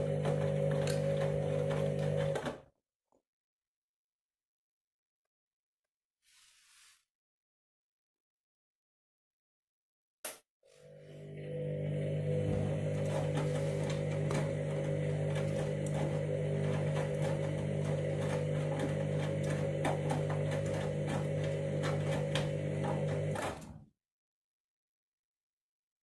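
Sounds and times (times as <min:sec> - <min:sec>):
washing machine motor hum: 0:00.0 - 0:02.6, 0:10.7 - 0:23.8.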